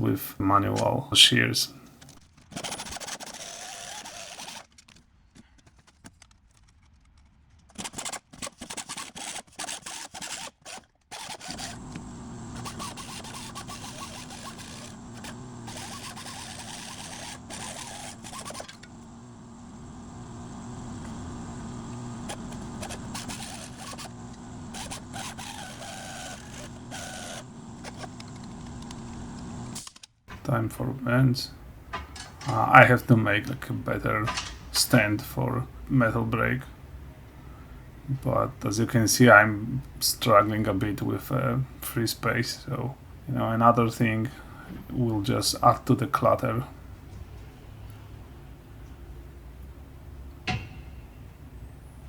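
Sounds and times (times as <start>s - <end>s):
steady hum: 0.0s - 2.2s, 11.5s - 52.0s
pneumatic shears cutting metal: 1.9s - 4.8s, 7.8s - 37.0s, 50.5s - 51.6s.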